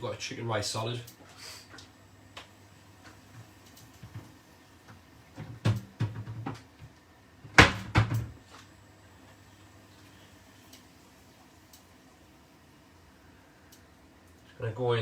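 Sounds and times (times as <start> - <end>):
cupboard door opening and shutting: 7.5 - 8.4.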